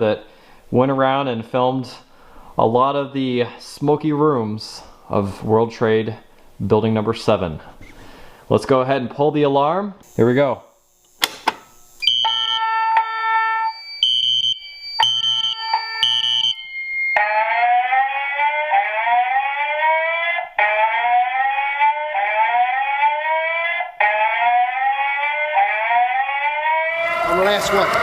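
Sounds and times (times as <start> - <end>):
fire alarm pull click: 11.1 - 13.1, 13.7 - 16.6
electronic alarm tones: 11.9 - 20.0
rising whoop alarm: 12.0 - 28.0.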